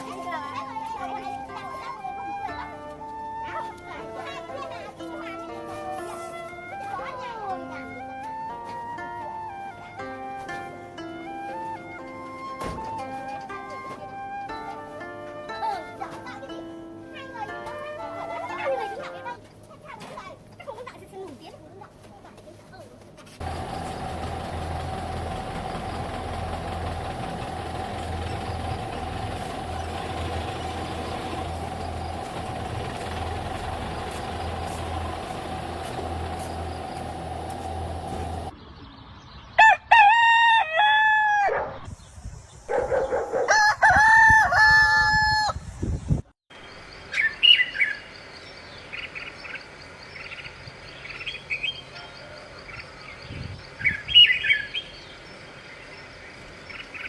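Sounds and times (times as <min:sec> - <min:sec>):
rooster crowing: 0:39.6 - 0:41.6, 0:43.4 - 0:45.6, 0:51.9 - 0:52.9
bird chirps: 0:46.6 - 0:57.0.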